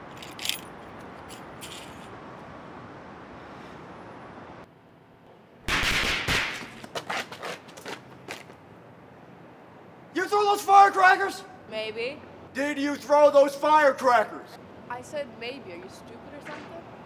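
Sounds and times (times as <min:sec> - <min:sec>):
firecrackers bang and cracks: 0:05.7 - 0:06.9.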